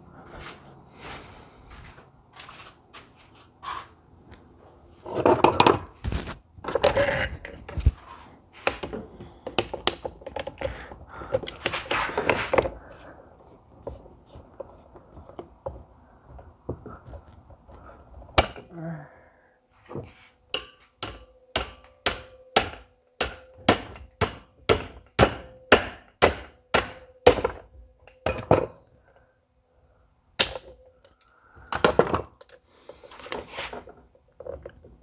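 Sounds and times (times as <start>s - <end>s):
hammer striking metal: 20.5s - 27.5s.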